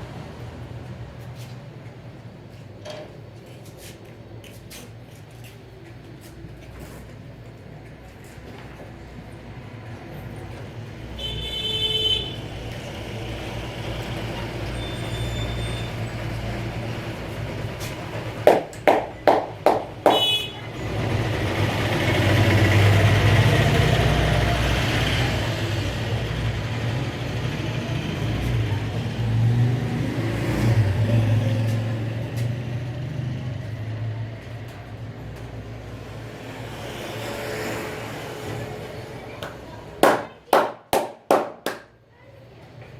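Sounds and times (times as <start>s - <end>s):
road traffic passing: 0.0s - 42.9s
car horn beep: 11.2s - 12.4s, 20.1s - 20.7s
sharp hand slaps: 18.5s - 20.2s, 40.0s - 41.9s.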